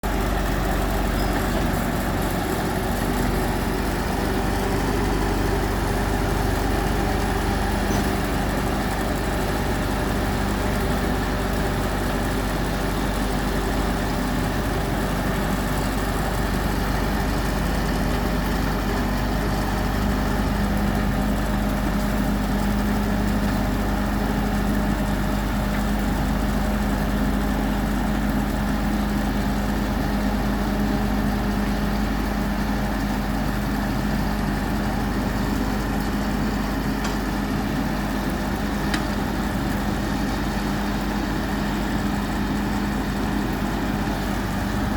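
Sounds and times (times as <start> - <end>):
diesel engine humming: 0.0 - 44.9.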